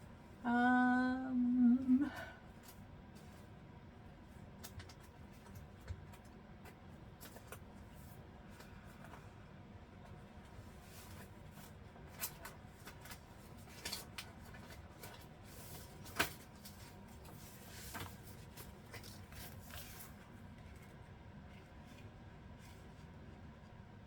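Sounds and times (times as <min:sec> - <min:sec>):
paper rustling: 0:10.7 - 0:23.1.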